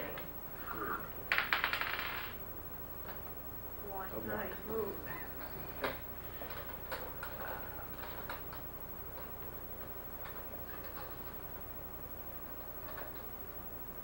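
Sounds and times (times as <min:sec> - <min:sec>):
steady low hum: 0:00.0 - 0:14.0
game pieces clicking on board: 0:01.3 - 0:02.4.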